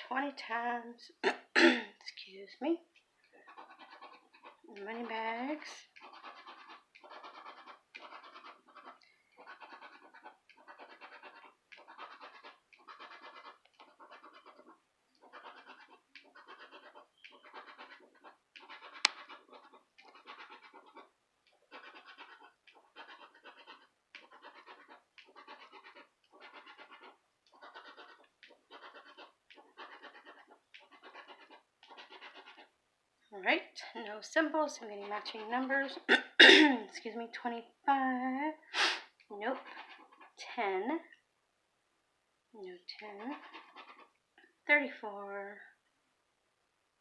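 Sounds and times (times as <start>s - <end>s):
scratching lottery ticket: 3.4s - 32.8s.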